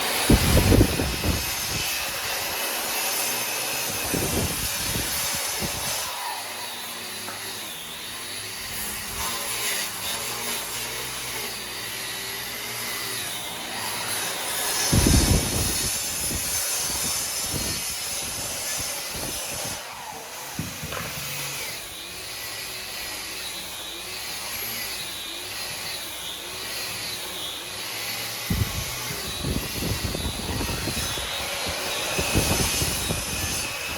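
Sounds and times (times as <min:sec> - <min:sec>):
power woodworking tools whining: 0:00.0 - 0:33.9
loud knocks: 0:20.6 - 0:21.3.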